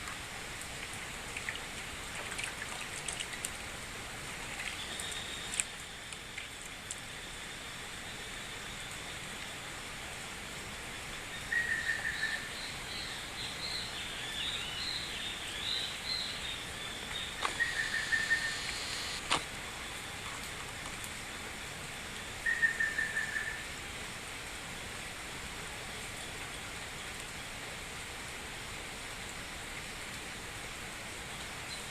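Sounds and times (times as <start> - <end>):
birds calling: 13.7 - 19.4
water hiss: 15.6 - 20.6
high bird chirps: 17.3 - 19.2
short trilled bird call: 17.5 - 19.2.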